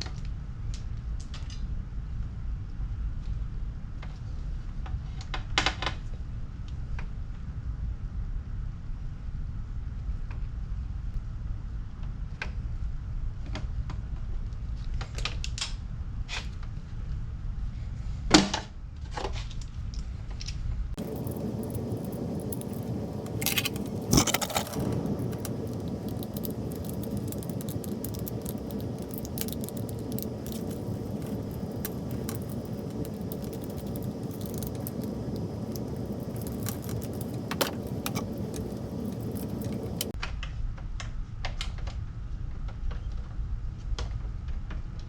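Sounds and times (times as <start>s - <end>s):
steady hiss: 21.0s - 40.2s.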